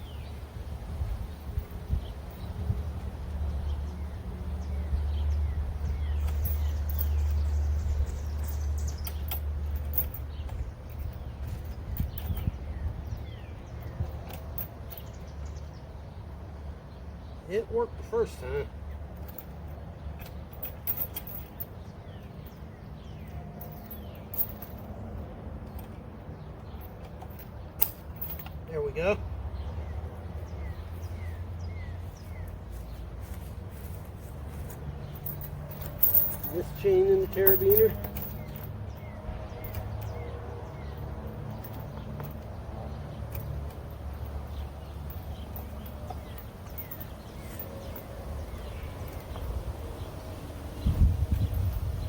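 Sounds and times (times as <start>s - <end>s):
birds chirping: 0.0s - 52.0s
metal chain clicking: 6.1s - 15.3s, 19.0s - 28.8s, 35.0s - 40.3s, 40.9s - 49.6s.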